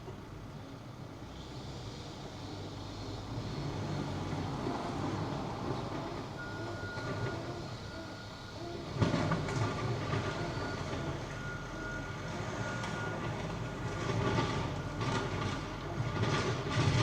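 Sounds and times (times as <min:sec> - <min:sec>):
train rumbling past: 0:00.0 - 0:17.0.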